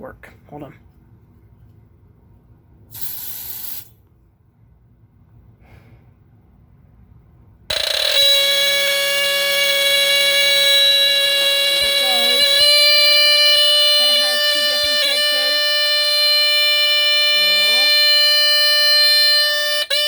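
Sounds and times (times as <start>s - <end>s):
smoke alarm buzzy squeal: 7.7s - 20.0s.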